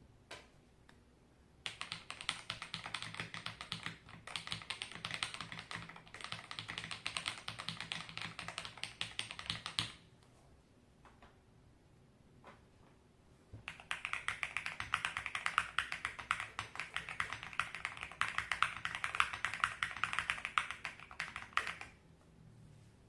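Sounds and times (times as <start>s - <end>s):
mechanical keyboard typing: 1.6s - 10.0s, 13.7s - 22.0s.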